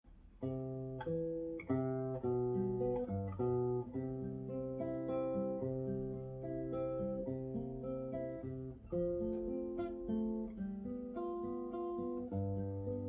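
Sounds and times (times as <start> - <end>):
acoustic guitar chords: 0.1 - 13.0.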